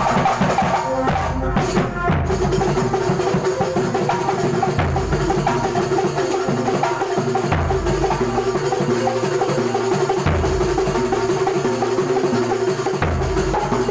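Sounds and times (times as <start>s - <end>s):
drums beating busy rhythm: 0.0s - 13.9s
short pitched percussion notes: 0.0s - 13.9s.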